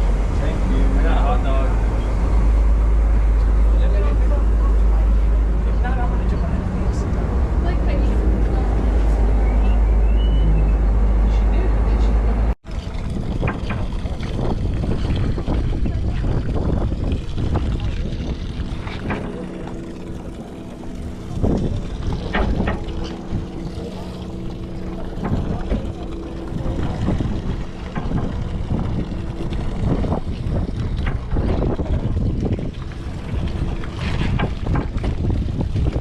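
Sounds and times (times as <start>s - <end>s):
boat engine rumbling: 0.0s - 36.0s
wind on microphone: 4.5s - 36.0s
scattered knocks: 22.0s - 23.5s.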